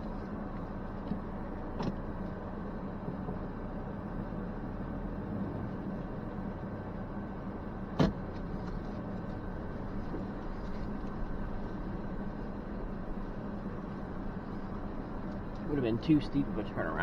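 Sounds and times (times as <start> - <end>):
pickup truck engine drone: 0.0 - 17.0.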